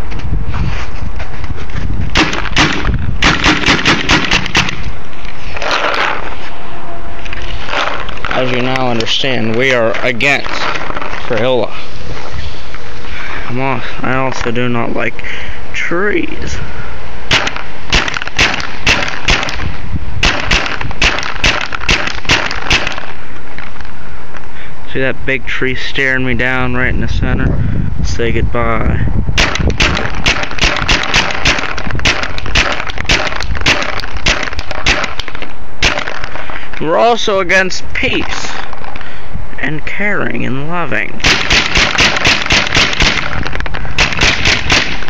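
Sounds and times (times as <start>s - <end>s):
paintball gun firing: 2.2s - 4.9s, 17.3s - 23.2s, 29.4s - 36.4s, 41.2s - 45.0s.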